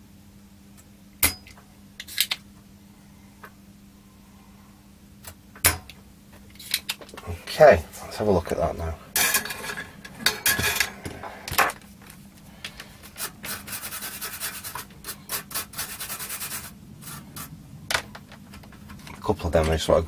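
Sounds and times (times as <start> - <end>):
rubbing and scraping: 12.9 - 17.6.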